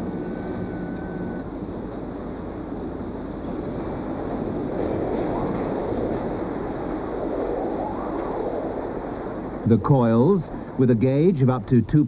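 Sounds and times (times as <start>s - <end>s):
high-pitched rail squeal: 0.0s - 1.5s
freight train rolling rumble: 0.0s - 12.0s.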